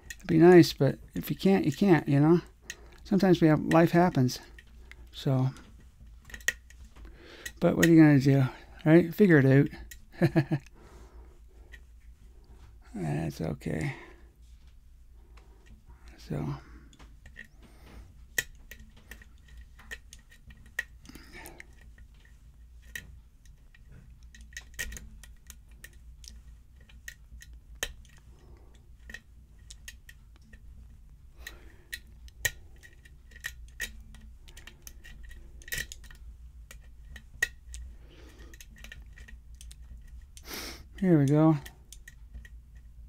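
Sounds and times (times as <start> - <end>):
lock pick clicking in lock: 22.9 - 28.2, 31.4 - 40.4.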